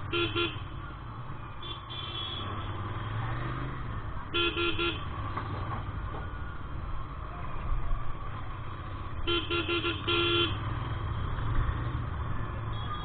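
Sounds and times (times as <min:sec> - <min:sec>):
vehicle horns beeping: 0:00.0 - 0:00.8, 0:01.6 - 0:02.8, 0:04.3 - 0:05.2, 0:09.2 - 0:10.7, 0:12.6 - 0:13.0.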